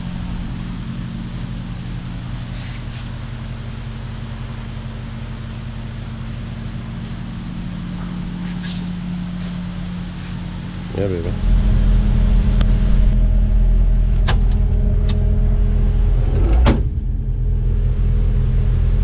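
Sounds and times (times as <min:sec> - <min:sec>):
machine droning: 0:00.0 - 0:19.0
brief hissing: 0:02.5 - 0:03.1.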